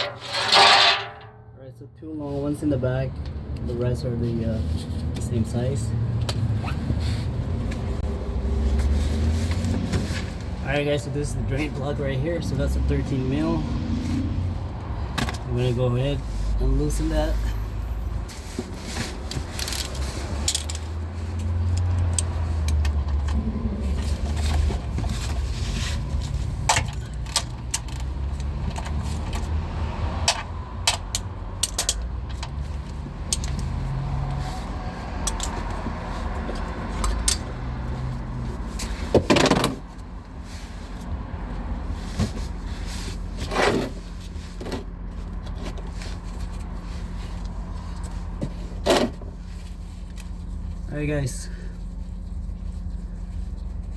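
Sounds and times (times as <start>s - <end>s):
wrench clinking and scraping metal: 0.0s - 1.6s, 19.5s - 23.3s, 30.2s - 33.8s, 35.2s - 35.7s, 36.9s - 37.6s.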